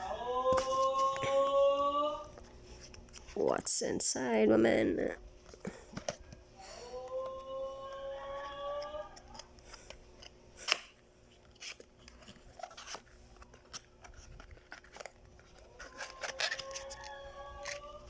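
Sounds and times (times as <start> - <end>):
packaging crinkling and rustling: 10.6 - 18.0.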